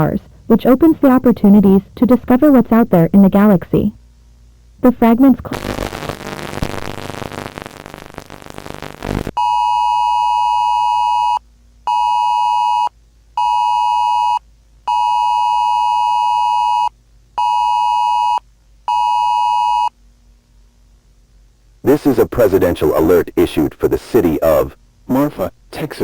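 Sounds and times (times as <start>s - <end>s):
noisy wash: 4.8s - 9.3s.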